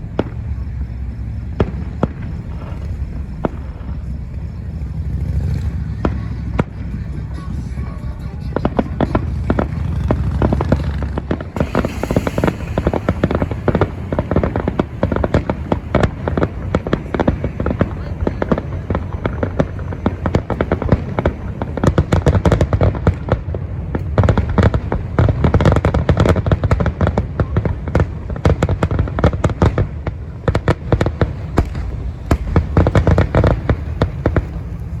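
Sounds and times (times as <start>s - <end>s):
low rumble: 0.0s - 19.3s
fireworks bangs and crackles: 0.0s - 35.0s.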